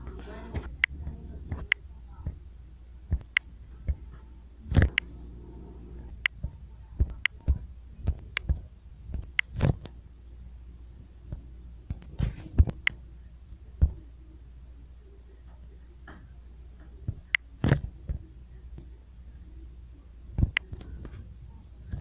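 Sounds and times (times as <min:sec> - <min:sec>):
steady low hum: 0:00.0 - 0:22.0
sharp clicks and knocks: 0:06.1 - 0:10.0.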